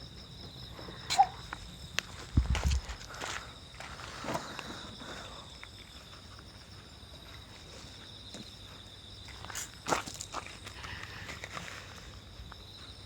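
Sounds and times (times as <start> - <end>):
insects trilling: 0.0 - 13.0
knocks and scuffs: 0.4 - 4.5.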